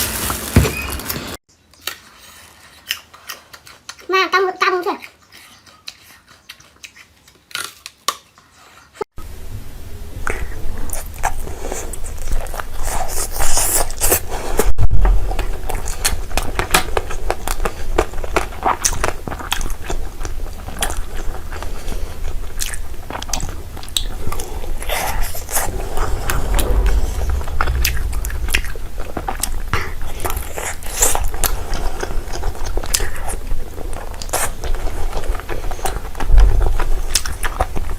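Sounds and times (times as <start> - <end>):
biting and chewing with crunching: 1.6 - 4.1, 5.0 - 9.0
low hum: 9.2 - 12.7, 25.4 - 30.8.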